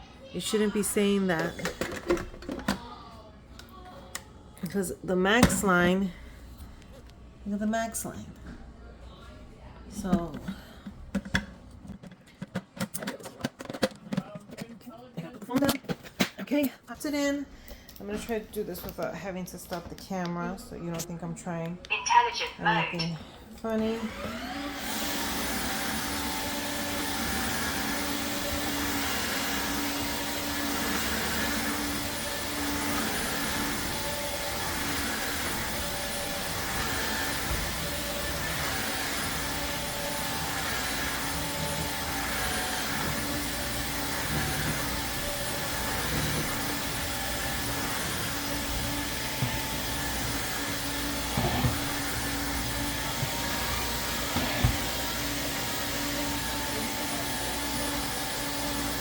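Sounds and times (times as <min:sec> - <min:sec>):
wet dry vacuum running: 0:23.6 - 0:59.0.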